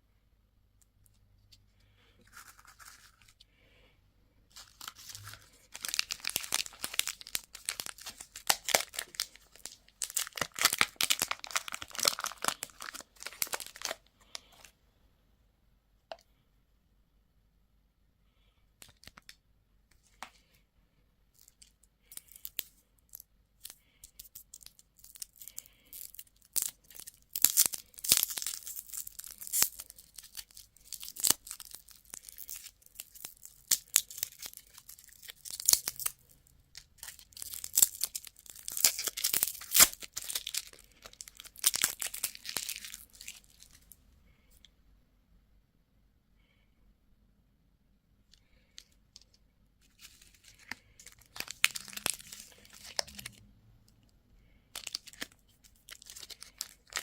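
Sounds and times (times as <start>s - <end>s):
candy wrapper crinkling: 2.2s - 3.4s, 4.5s - 14.7s, 18.8s - 19.4s, 21.4s - 44.0s, 48.4s - 53.4s, 54.7s - 57.0s.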